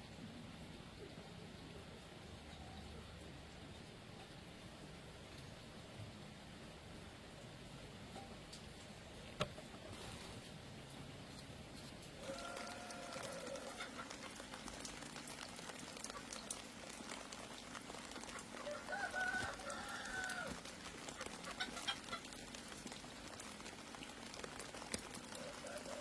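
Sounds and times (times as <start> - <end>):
patter of small ticks: 9.6 - 26.0
rooster crowing: 12.2 - 13.8, 18.6 - 20.6, 25.3 - 26.0.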